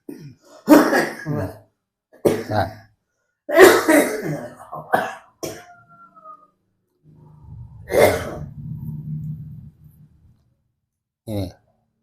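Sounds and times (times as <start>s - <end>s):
person coughing: 0.0s - 1.6s, 3.5s - 5.8s, 7.9s - 8.5s.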